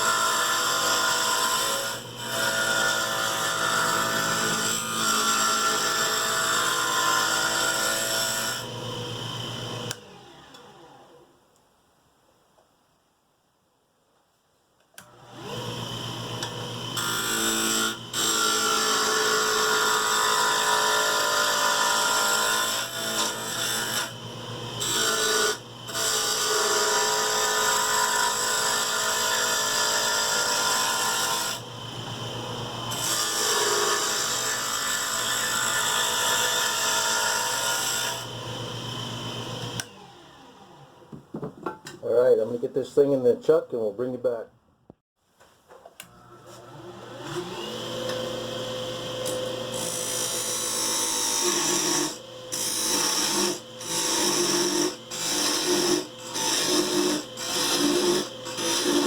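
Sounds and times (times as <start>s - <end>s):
turning tool cutting wood: 0.0s - 10.8s, 15.0s - 40.7s, 46.0s - 59.0s
wood lathe motor humming: 46.0s - 59.0s.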